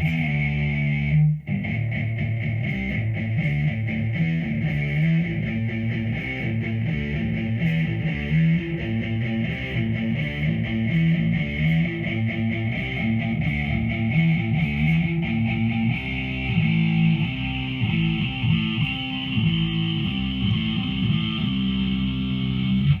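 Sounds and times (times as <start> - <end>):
distorted electric guitar riffing: 0.0 - 23.0.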